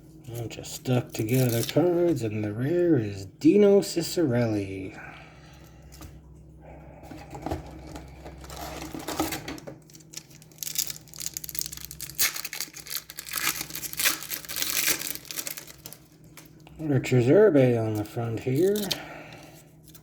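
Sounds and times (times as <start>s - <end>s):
wrapper tearing and crinkling: 1.1s - 1.8s, 7.9s - 16.6s, 17.9s - 19.0s.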